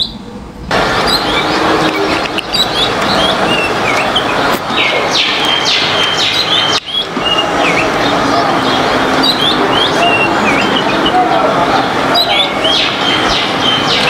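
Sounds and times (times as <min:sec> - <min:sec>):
loud steady rushing noise: 0:00.0 - 0:14.0
small birds chirping: 0:00.0 - 0:14.0.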